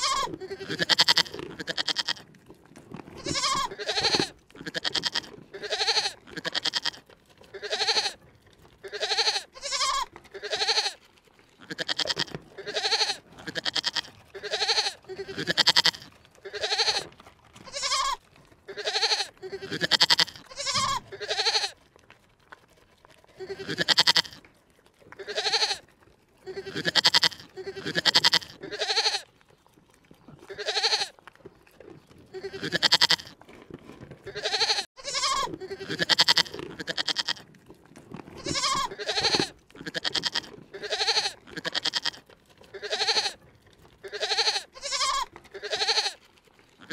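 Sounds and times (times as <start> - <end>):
animal calling: 0.0 - 2.2, 3.2 - 8.2, 8.8 - 11.0, 11.6 - 21.8, 34.3 - 37.4, 38.4 - 43.4, 44.0 - 46.2.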